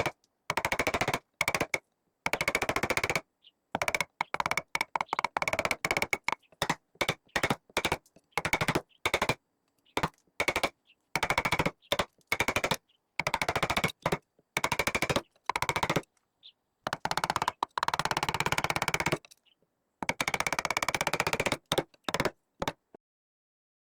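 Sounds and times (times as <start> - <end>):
power woodworking tool rattling: 0.0 - 3.2, 3.8 - 9.4, 10.0 - 16.0, 16.9 - 19.4, 20.0 - 23.0.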